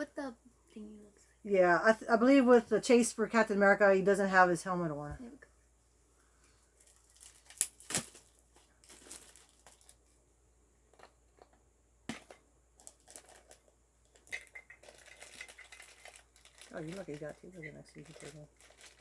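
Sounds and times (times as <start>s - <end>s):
plastic packaging crinkling: 6.8s - 10.1s, 12.8s - 19.0s.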